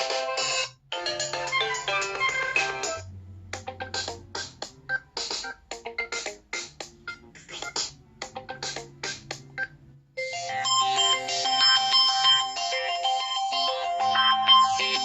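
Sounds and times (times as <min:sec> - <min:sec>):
electronic melody ringtone: 0:00.0 - 0:06.4, 0:09.5 - 0:15.0.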